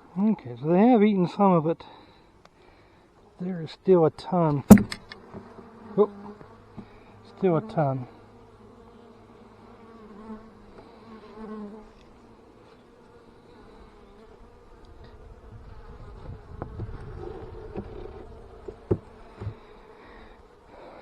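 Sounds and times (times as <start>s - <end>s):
sharp clicks: 4.5s - 5.2s
bees buzzing: 4.5s - 21.0s.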